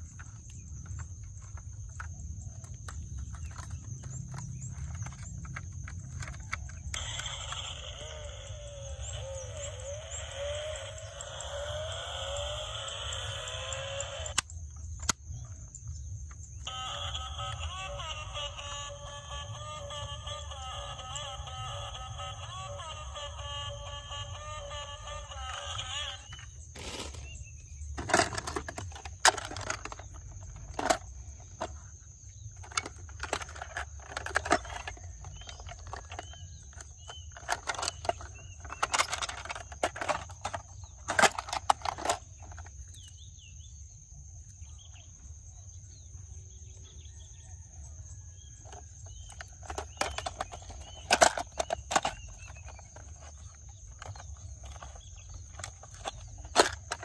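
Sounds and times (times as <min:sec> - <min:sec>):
plastic toy cars clacking: 0:00.0 - 0:15.6, 0:16.2 - 0:43.2, 0:48.6 - 0:57.0.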